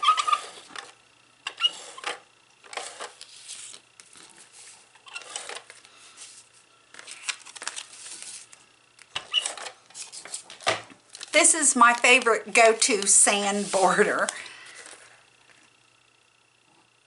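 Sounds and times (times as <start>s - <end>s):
paper rustling and sliding: 1.6s - 8.6s, 9.3s - 10.6s, 13.0s - 14.0s.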